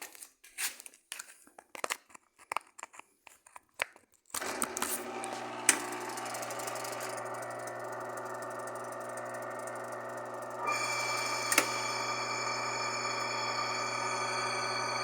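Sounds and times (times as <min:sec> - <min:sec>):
washing machine motor humming: 0:04.4 - 0:15.0.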